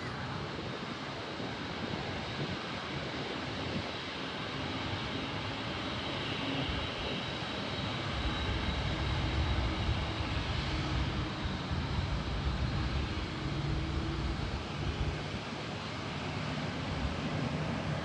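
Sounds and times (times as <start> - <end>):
jet engines running: 0.0 - 18.0.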